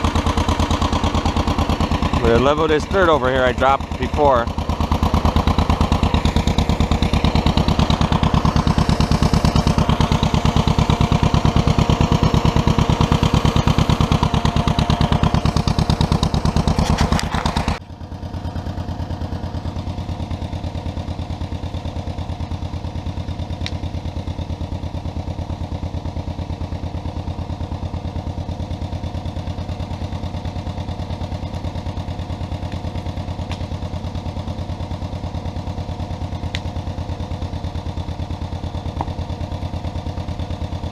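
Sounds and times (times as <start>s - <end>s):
tractor engine running: 0.0s - 40.9s.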